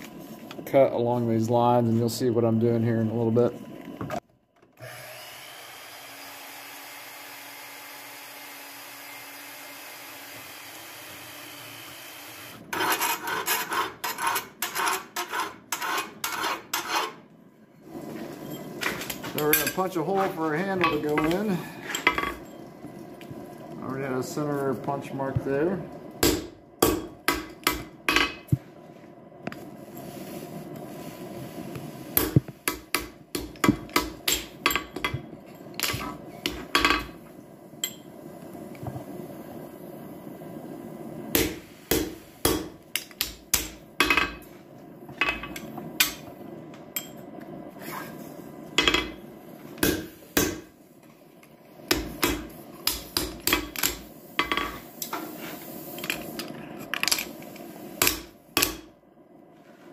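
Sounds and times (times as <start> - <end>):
hammer striking punch through steel: 26.2 - 27.9, 41.4 - 44.3, 49.8 - 50.7, 58.0 - 58.9.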